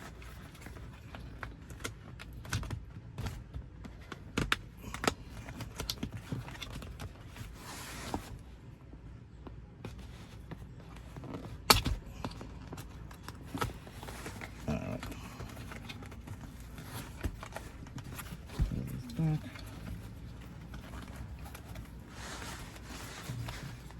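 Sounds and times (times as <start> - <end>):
scraping rustle: 13.0 - 23.9.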